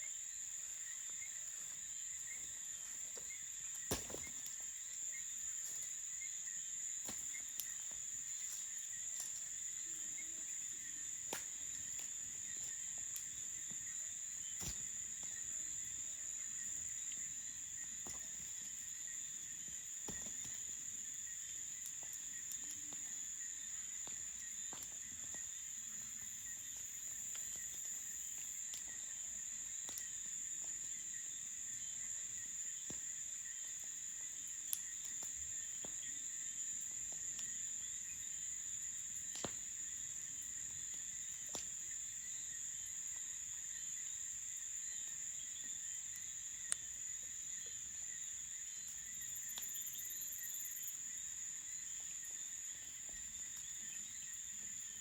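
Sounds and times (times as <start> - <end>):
crickets chirring: 0.0 - 55.0
campfire crackling: 0.4 - 42.3.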